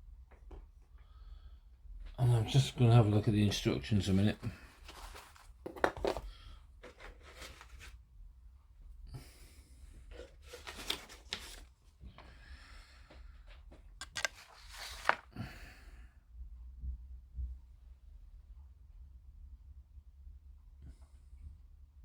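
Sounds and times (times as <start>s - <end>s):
soft paper rustles: 3.4s - 8.0s, 10.0s - 12.2s, 13.7s - 15.6s.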